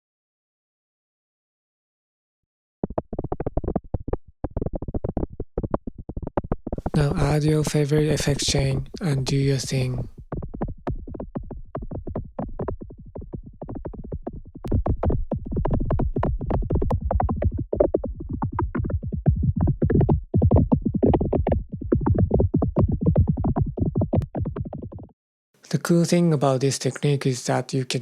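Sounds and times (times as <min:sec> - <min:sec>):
rapid irregular crackling: 0:02.8 - 0:24.9.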